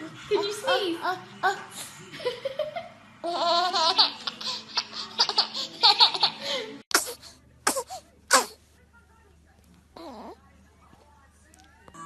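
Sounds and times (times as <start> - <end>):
baby laughing: 3.2 - 7.9.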